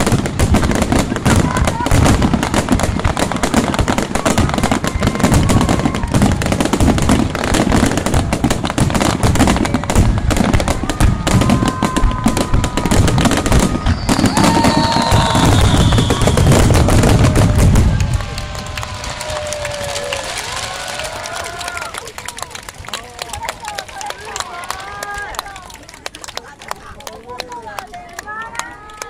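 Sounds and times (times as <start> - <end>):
fireworks booming and crackling: 0.0 - 22.0.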